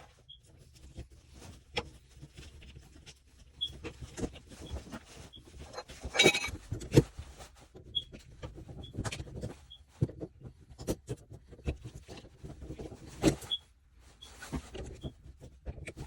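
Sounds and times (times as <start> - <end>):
short high squeaks: 6.1 - 6.5.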